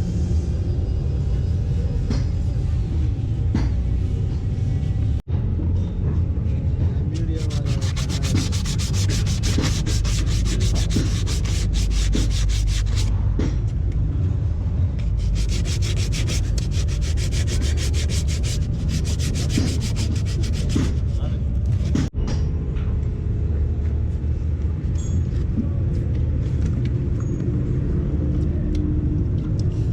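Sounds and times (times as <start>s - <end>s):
steady low rumble: 0.0s - 29.9s
abrasive rubbing strokes: 7.2s - 13.1s, 15.0s - 22.1s.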